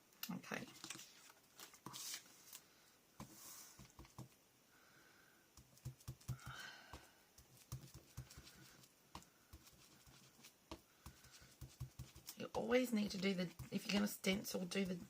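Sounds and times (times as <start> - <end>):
foam tool tapping on paper: 5.6 - 15.0.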